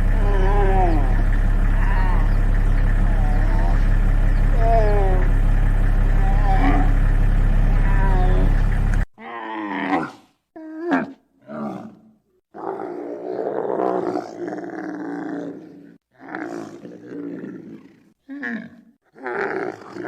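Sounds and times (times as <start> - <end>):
giraffe calls: 0.0 - 9.0.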